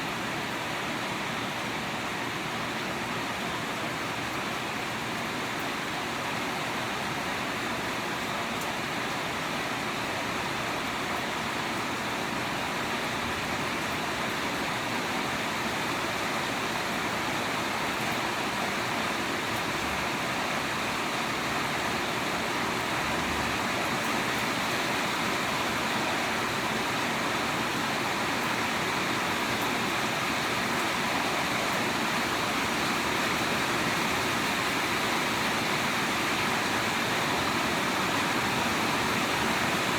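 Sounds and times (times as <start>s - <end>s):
steady rainfall: 0.0s - 39.9s.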